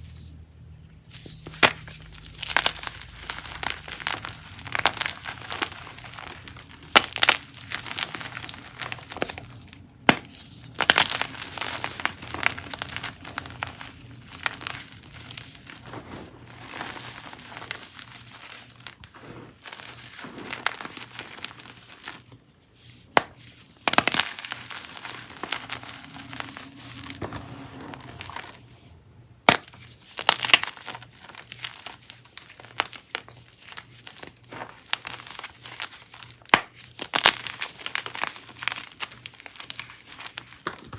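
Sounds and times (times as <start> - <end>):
chalk being crushed: 1.3 - 28.7.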